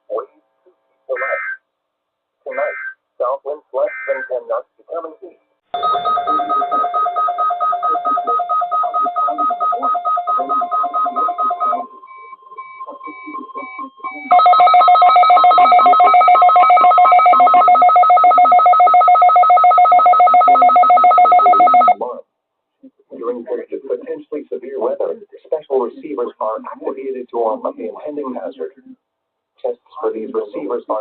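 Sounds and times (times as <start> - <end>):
faint steady alarm tone: 5.7 - 22.0
two-tone alarm beeping: 5.8 - 22.0.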